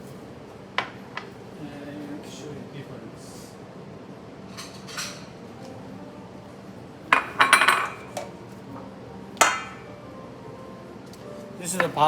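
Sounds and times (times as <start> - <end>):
dishes clinking on a counter: 4.5 - 5.4, 7.1 - 8.3, 9.4 - 9.8, 11.8 - 12.0.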